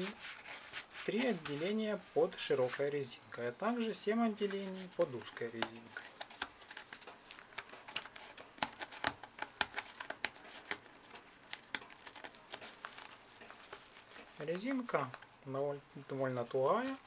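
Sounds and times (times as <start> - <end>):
fabric bag rustling: 12.1 - 15.4.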